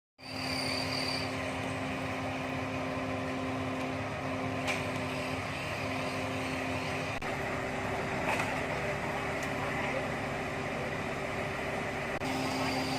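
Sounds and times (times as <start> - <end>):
short high whine: 0.2 - 2.1, 12.2 - 12.9
diesel truck engine running: 0.2 - 12.9.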